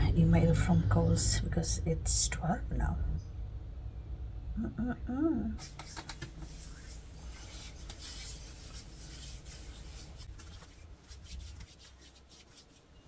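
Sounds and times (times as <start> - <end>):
rubbing and handling noise: 5.6 - 13.0.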